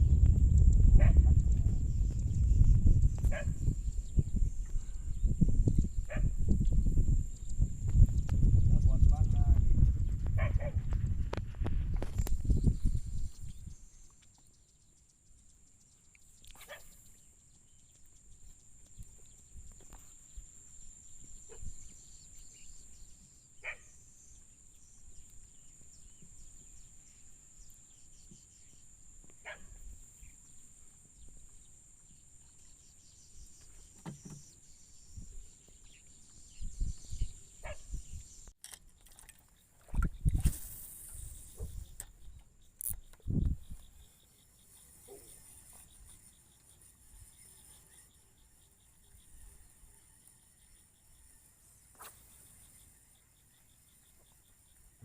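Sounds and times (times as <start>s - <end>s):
dull low thumps: 0.0s - 13.8s
faint high-pitched hiss: 40.2s - 55.0s.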